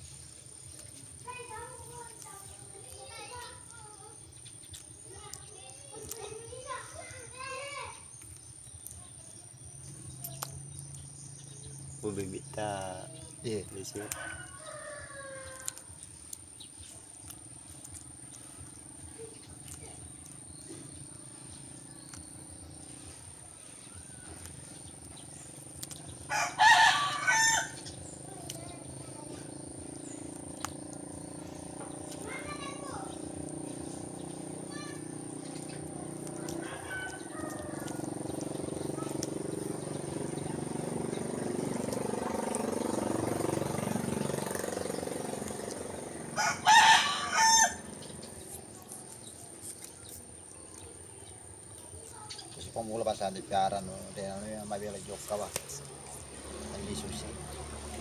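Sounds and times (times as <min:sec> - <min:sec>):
rooster crowing: 0:13.9 - 0:15.9, 0:26.3 - 0:27.9, 0:36.3 - 0:38.3, 0:46.2 - 0:48.2.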